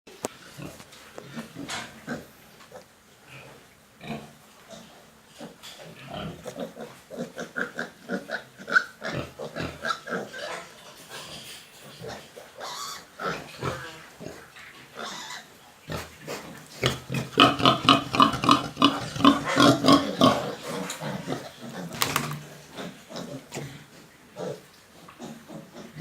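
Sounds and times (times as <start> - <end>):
pigs grunting: 3.3 - 26.0.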